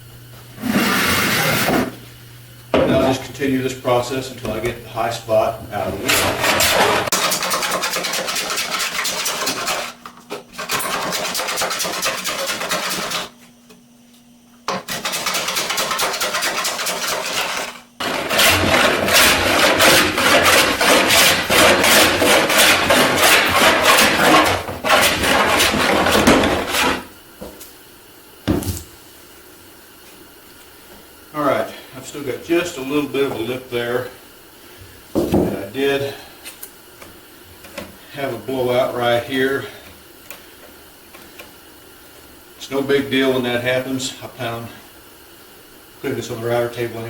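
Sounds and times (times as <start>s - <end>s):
hand plane scraping wood: 0.6s - 2.0s, 5.7s - 10.0s, 10.6s - 13.3s, 14.8s - 27.1s.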